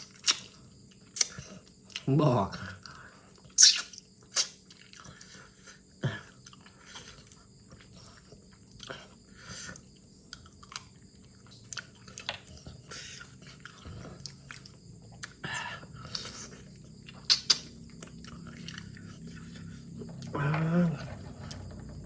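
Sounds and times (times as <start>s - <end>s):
person chewing: 0.0s - 2.1s, 2.8s - 21.7s
mouth clicks: 3.6s - 4.6s, 17.1s - 17.7s
sucking slurps: 16.0s - 21.6s.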